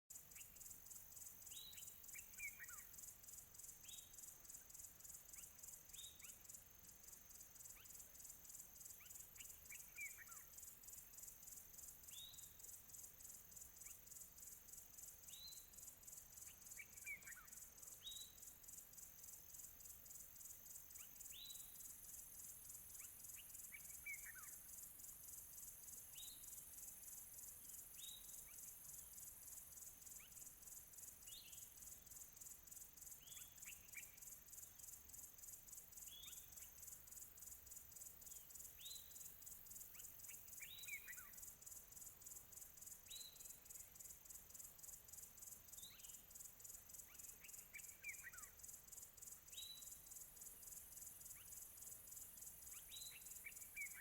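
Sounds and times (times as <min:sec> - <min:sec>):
crickets chirping: 0:00.1 - 0:54.0.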